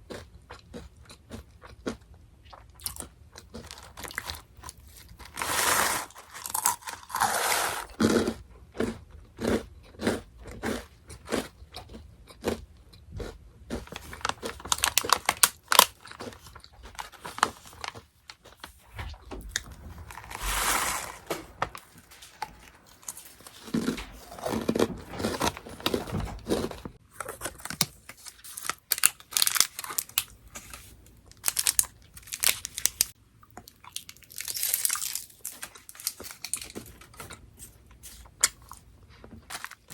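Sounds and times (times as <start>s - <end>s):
crunching and chewing crackers: 0.0s - 18.8s, 21.8s - 39.9s
snack bag crinkling: 2.9s - 8.0s, 13.2s - 18.8s, 19.6s - 33.1s, 33.7s - 37.4s.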